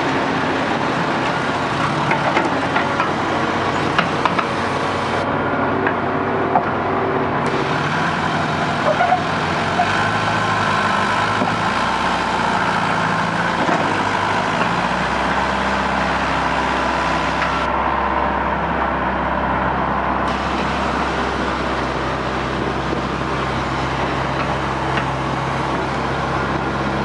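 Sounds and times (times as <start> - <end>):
heavy machinery diesel engines: 0.0 - 27.0.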